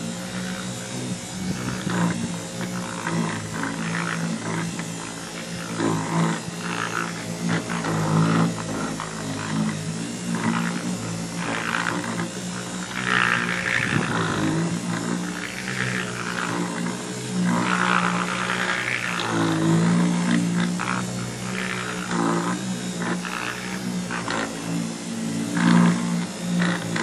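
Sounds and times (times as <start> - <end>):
small power tool motor droning: 0.0 - 27.0.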